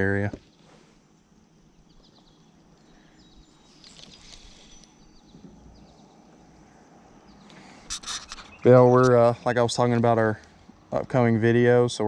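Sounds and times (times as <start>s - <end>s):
faint bird chirps: 0.4s - 9.6s.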